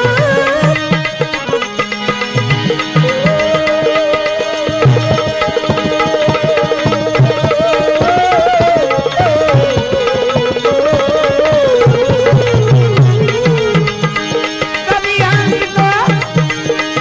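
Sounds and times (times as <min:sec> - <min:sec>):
ornamented sliding melody: 0:00.0 - 0:17.0
tabla rhythm: 0:00.0 - 0:17.0.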